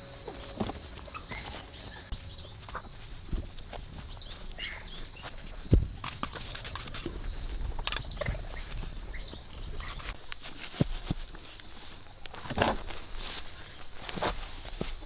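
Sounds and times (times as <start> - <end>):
steady high hum: 0.0 - 10.2.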